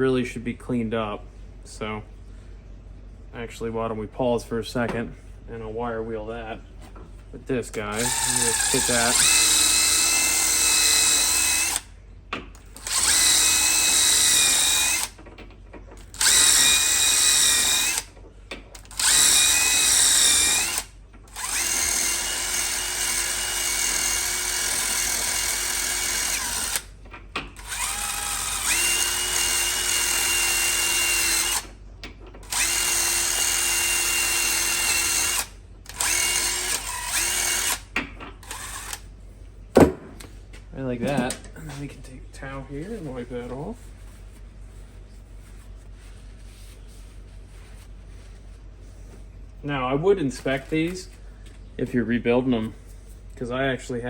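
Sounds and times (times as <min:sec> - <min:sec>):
wire wheel brushing metal: 0:07.8 - 0:11.8
power tool motor whine: 0:08.0 - 0:11.9, 0:12.7 - 0:15.2, 0:16.0 - 0:18.1, 0:18.8 - 0:26.9, 0:27.6 - 0:31.7, 0:32.4 - 0:39.0.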